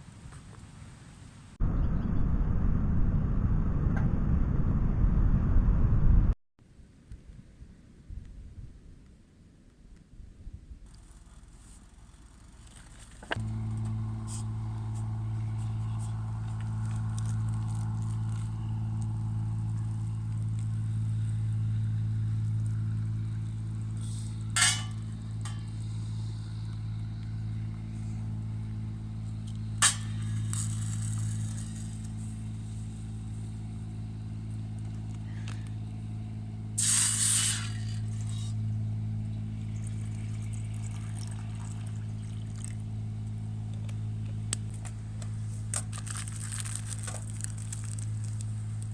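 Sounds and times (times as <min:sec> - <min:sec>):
low engine hum: 0:01.6 - 0:06.4, 0:10.9 - 0:48.9
brief hiss: 0:36.8 - 0:38.5.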